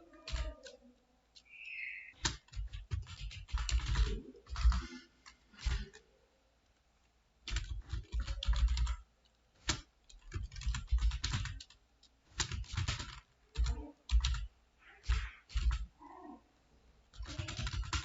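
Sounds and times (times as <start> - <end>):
computer keyboard typing: 0.0 - 6.2, 7.4 - 16.3, 17.1 - 18.0.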